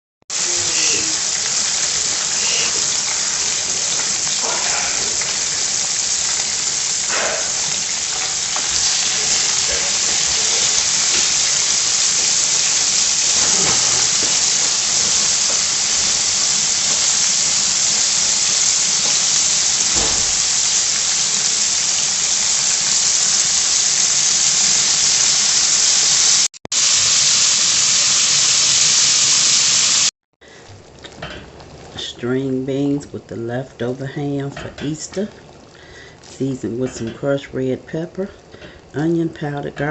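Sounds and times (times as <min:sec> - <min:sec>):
meat sizzling in hot oil: 0:00.3 - 0:31.9.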